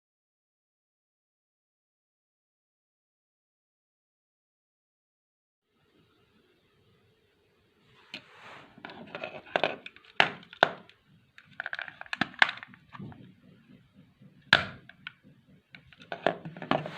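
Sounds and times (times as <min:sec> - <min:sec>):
rustling handling noise: 0:14.4 - 0:16.9.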